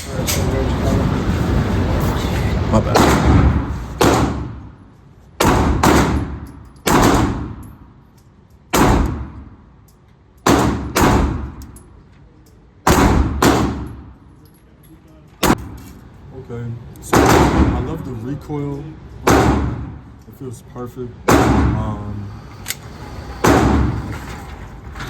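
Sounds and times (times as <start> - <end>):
pistol shots with echo: 2.9 - 4.6, 5.4 - 7.6, 8.7 - 9.5, 10.4 - 11.6, 12.8 - 14.1, 17.1 - 17.8, 19.3 - 20.0, 21.3 - 21.8.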